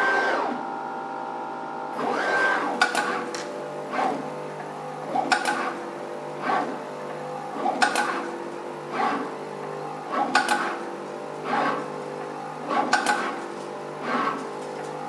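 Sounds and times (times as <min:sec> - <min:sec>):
machine motors whining: 0:00.0 - 0:01.0, 0:01.9 - 0:15.0
sharp machine clicks: 0:05.1 - 0:05.8, 0:07.6 - 0:08.3, 0:10.2 - 0:10.9, 0:12.6 - 0:13.6.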